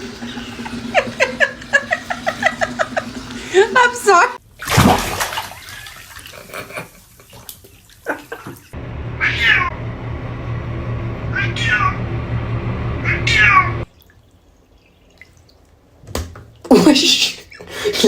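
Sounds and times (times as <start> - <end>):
low hum: 8.8 - 13.9
cat meowing: 9.2 - 9.8, 11.3 - 12.0, 13.0 - 13.8.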